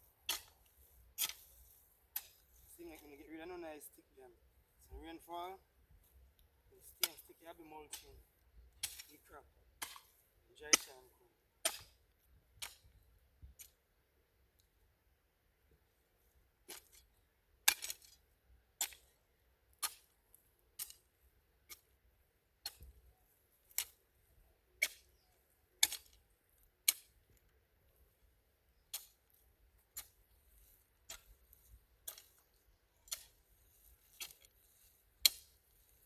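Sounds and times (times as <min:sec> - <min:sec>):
hand tool chopping ground: 0:00.2 - 0:03.9, 0:06.8 - 0:08.2, 0:08.8 - 0:12.0, 0:12.6 - 0:13.0, 0:16.7 - 0:17.1, 0:17.7 - 0:18.2, 0:18.8 - 0:19.1, 0:19.8 - 0:20.1, 0:20.8 - 0:21.9, 0:23.7 - 0:24.0, 0:24.8 - 0:25.2, 0:25.8 - 0:26.2, 0:26.9 - 0:27.2, 0:28.8 - 0:36.0.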